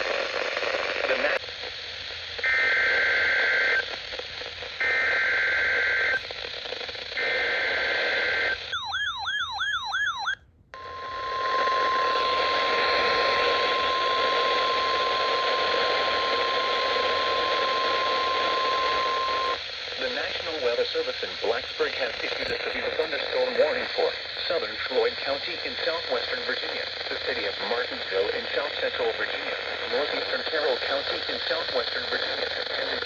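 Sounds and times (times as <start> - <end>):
radio hiss: 0.0 - 8.6, 10.8 - 33.0
warbling alarm tone: 8.6 - 12.6.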